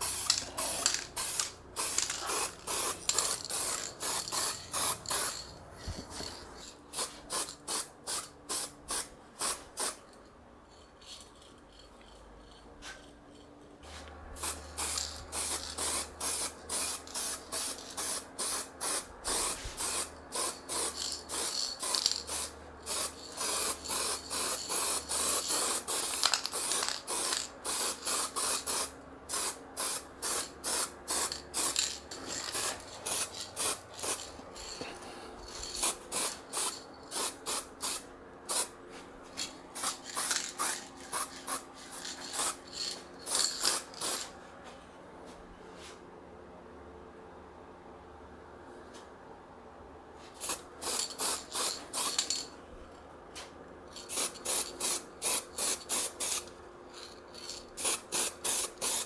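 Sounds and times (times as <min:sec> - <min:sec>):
spray paint can hissing: 0:00.0 - 0:10.0, 0:14.4 - 0:34.8, 0:35.5 - 0:38.7, 0:39.8 - 0:44.3, 0:50.4 - 0:52.5, 0:54.0 - 0:56.5, 0:57.4 - 0:59.0.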